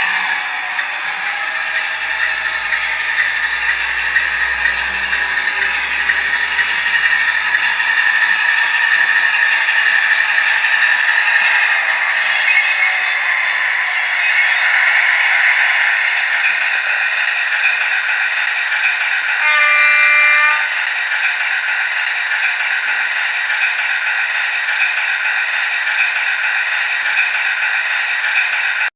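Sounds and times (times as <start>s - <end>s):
diesel engine through small speaker: 0.0s - 9.8s
horn blast: 19.4s - 20.7s.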